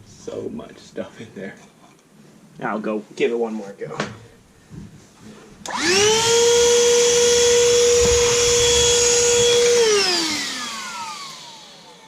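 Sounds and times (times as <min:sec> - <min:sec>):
vacuum cleaner motor whining: 0:05.6 - 0:12.0
vacuum cleaner switch click: 0:05.7 - 0:05.9.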